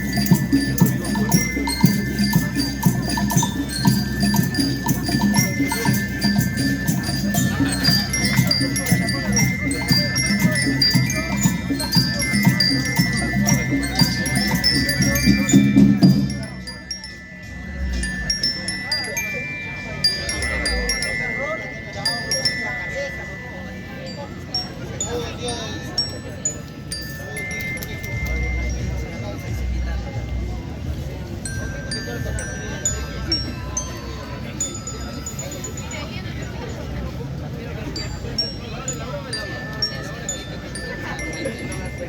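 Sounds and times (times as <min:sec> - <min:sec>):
steady drumming: 0:00.0 - 0:23.2
glockenspiel chiming: 0:00.0 - 0:42.0.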